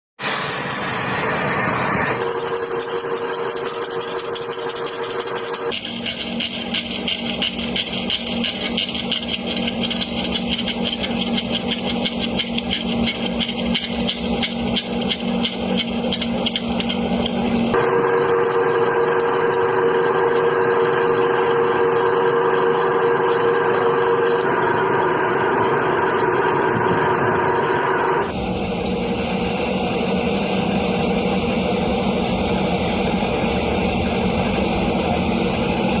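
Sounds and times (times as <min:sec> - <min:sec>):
machine humming: 0:00.4 - 0:11.7, 0:16.4 - 0:32.3.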